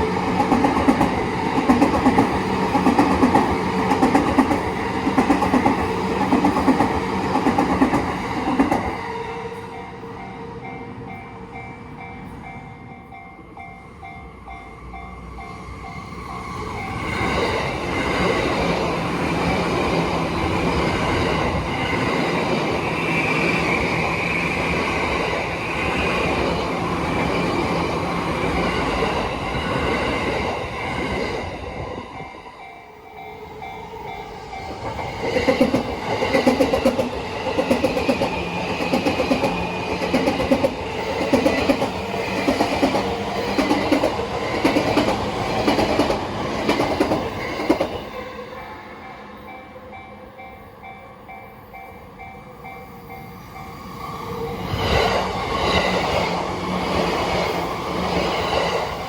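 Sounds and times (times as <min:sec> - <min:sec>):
level-crossing warning bell: 0:00.0 - 0:18.6, 0:20.3 - 0:57.5
electric train passing: 0:00.0 - 0:59.0
train wheels clattering over joints: 0:35.2 - 0:47.9.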